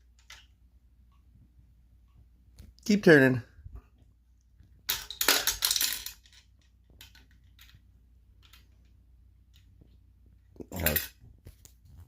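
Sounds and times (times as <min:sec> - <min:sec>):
gumball machine clattering: 0:04.9 - 0:07.8.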